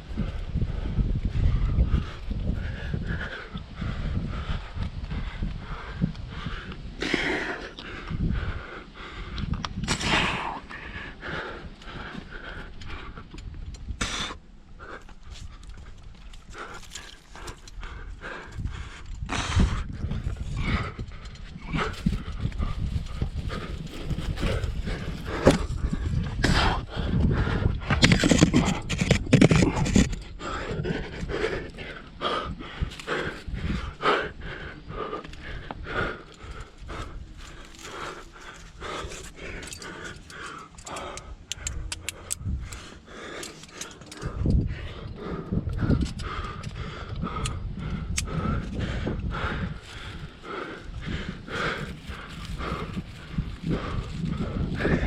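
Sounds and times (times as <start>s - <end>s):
hard breathing: 0.0s - 55.0s
climbing gear knocking on rock: 27.2s - 30.2s.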